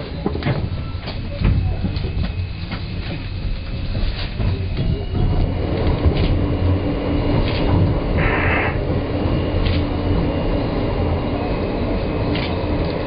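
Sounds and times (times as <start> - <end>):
train rumble: 0.0 - 13.0
wheels clicking over rails: 0.0 - 13.0
thin whine: 2.7 - 12.8
short hiss: 8.2 - 8.8.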